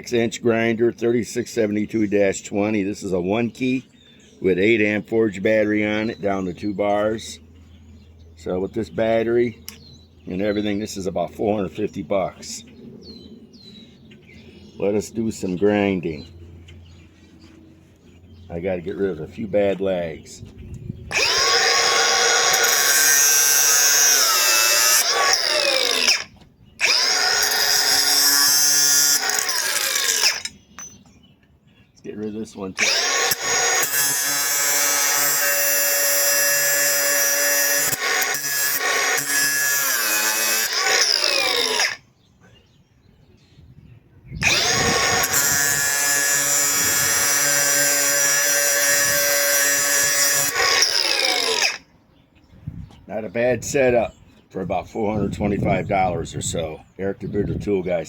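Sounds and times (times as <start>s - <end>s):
angle grinder whining: 21.1s - 31.0s, 32.8s - 42.0s, 44.4s - 51.8s.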